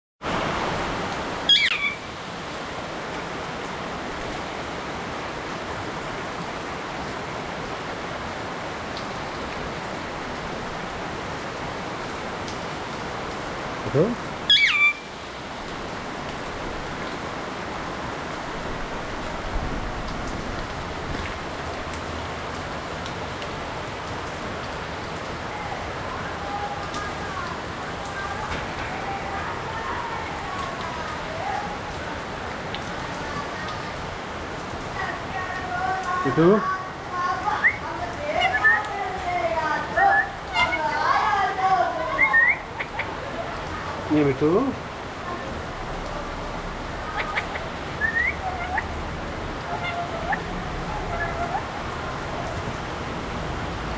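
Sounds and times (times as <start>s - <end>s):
rain hissing: 0.2s - 53.9s
parrot squawk: 1.5s - 2.1s, 14.5s - 15.0s, 38.4s - 38.8s, 40.1s - 41.1s, 42.1s - 43.2s, 47.1s - 48.9s, 49.7s - 51.7s.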